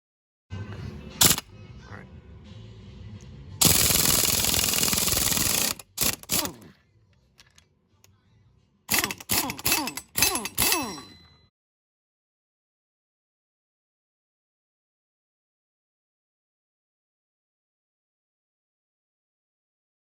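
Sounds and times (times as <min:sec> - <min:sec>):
impact wrench hammering on nuts: 0:01.2 - 0:01.4, 0:03.6 - 0:06.6, 0:08.9 - 0:11.2.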